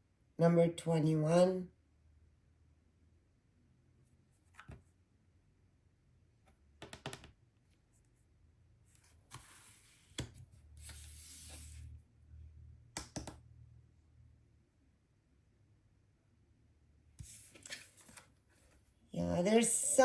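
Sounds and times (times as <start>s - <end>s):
cards shuffling: 4.5s - 4.8s, 17.2s - 18.8s.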